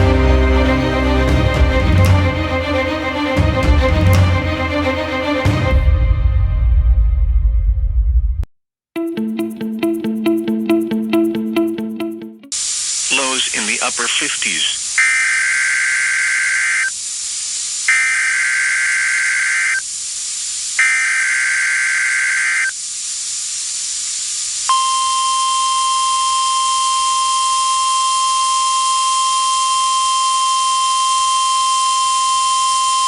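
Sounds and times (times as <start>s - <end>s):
radio hiss: 12.6s - 24.7s
shrill digital data bursts: 12.6s - 24.7s
steady single-tone warning alarm: 14.8s - 33.0s.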